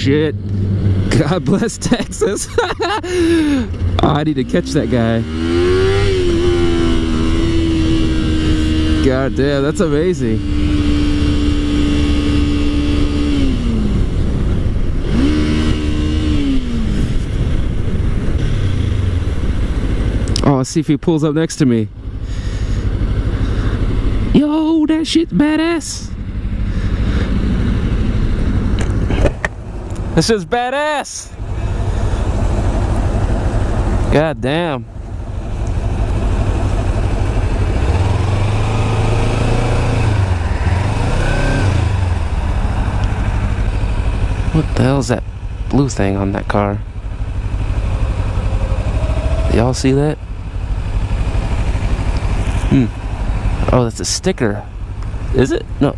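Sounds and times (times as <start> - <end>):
motorcycle engine revving: 0.0 - 20.5, 25.4 - 30.4, 31.3 - 55.9
road and wind noise: 0.0 - 55.9
wind rumbling on microphone: 47.3 - 51.5.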